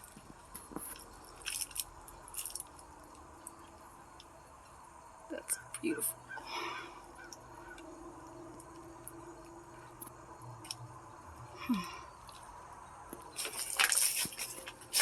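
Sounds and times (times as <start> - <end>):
loud crunching: 13.2 - 15.0.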